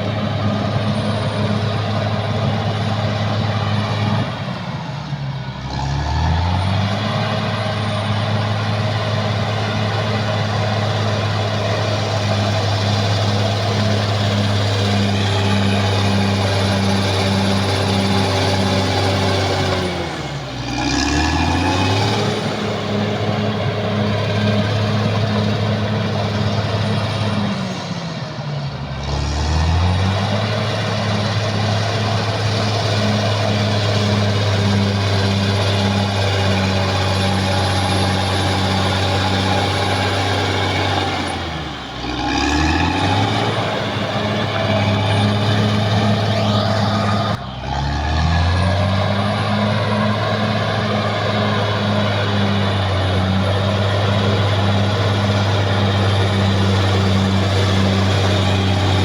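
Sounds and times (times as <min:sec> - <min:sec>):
bulldozer diesel engine: 0:00.0 - 0:59.0.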